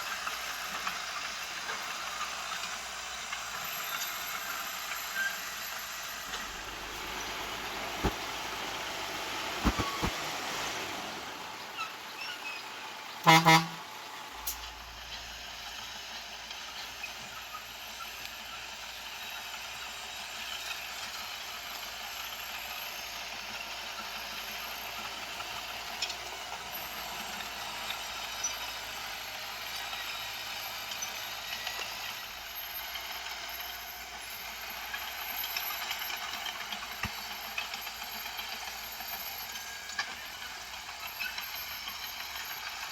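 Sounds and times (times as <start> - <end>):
heavy earthmoving machinery running: 0.0 - 42.9
vehicle horn honk: 13.2 - 13.9.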